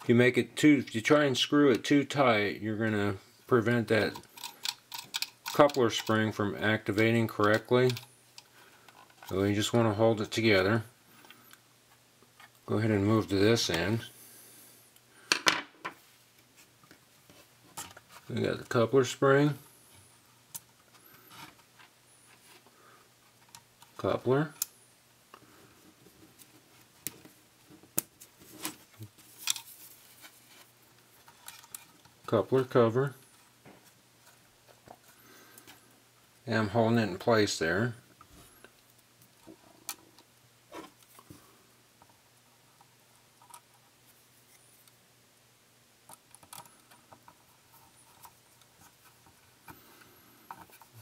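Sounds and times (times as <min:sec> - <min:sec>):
small plastic parts clicking: 0:04.1 - 0:06.2, 0:46.1 - 0:47.4.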